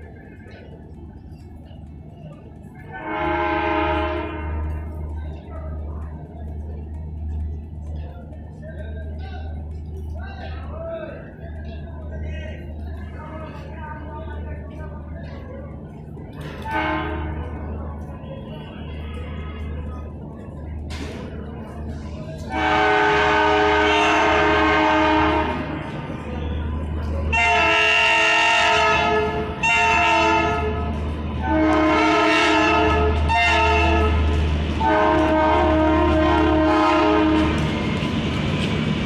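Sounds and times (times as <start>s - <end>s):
locomotive horn blasts: 2.9s - 4.9s, 16.6s - 17.6s, 22.5s - 25.8s, 27.3s - 37.6s.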